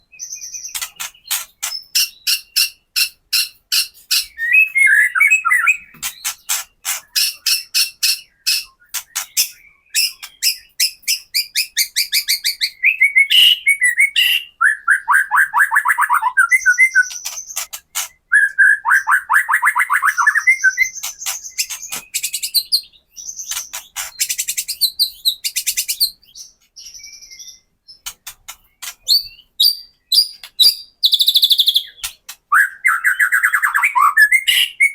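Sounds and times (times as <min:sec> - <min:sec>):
bird rattling call with trills: 0:00.6 - 0:12.6, 0:15.6 - 0:18.2, 0:19.0 - 0:26.2
bird whistled phrases: 0:04.1 - 0:05.9, 0:10.0 - 0:17.3, 0:18.3 - 0:21.1, 0:29.1 - 0:34.9.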